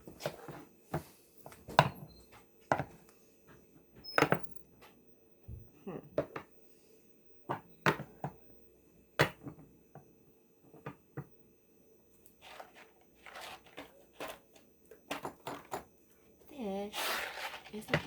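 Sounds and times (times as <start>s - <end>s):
rustling scrapes: 12.4s - 14.6s, 16.8s - 18.0s
objects clicking and knocking: 12.4s - 15.9s.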